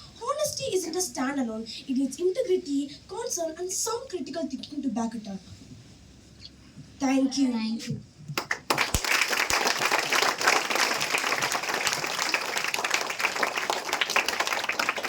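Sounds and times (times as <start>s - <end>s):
audience applauding: 8.4s - 15.0s.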